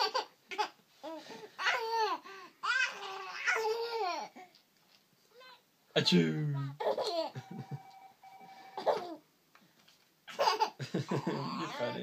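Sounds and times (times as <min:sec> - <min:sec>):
baby giggling and babbling: 0:00.0 - 0:04.5, 0:06.6 - 0:07.4, 0:08.8 - 0:09.2, 0:10.3 - 0:12.0.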